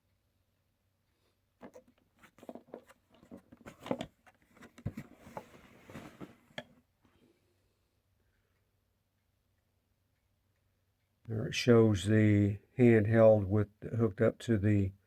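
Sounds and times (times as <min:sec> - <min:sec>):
cardboard box rustling: 0:02.3 - 0:06.6.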